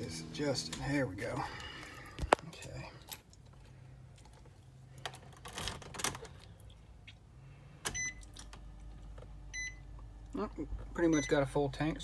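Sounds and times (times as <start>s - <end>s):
electronic dashboard beep: 8.0s - 8.2s, 9.5s - 9.8s, 11.0s - 11.6s.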